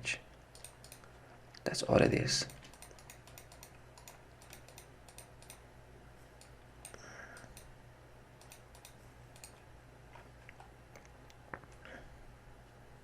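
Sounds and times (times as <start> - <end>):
low steady hum: 0.0 - 13.0
mouse and keyboard clicks: 0.6 - 1.1, 2.5 - 5.6, 8.4 - 9.6.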